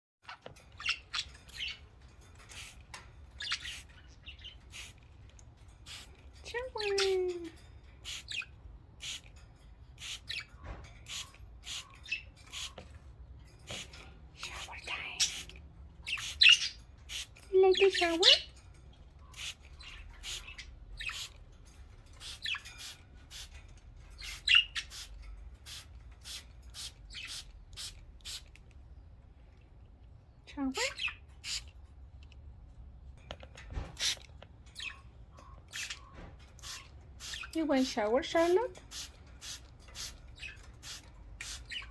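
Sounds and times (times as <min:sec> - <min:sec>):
budgies chirping and squawking: 0:00.3 - 0:01.8, 0:02.5 - 0:04.9, 0:14.9 - 0:16.8, 0:24.2 - 0:25.1
budgerigars chirping and squawking: 0:00.3 - 0:05.0, 0:05.9 - 0:07.4, 0:08.0 - 0:09.3, 0:10.0 - 0:12.9, 0:13.6 - 0:18.6, 0:19.3 - 0:21.4, 0:22.2 - 0:28.4, 0:30.7 - 0:31.7, 0:34.0 - 0:41.9
spray bottle hissing: 0:11.1 - 0:11.9, 0:12.5 - 0:12.8, 0:25.7 - 0:28.4, 0:38.9 - 0:40.2.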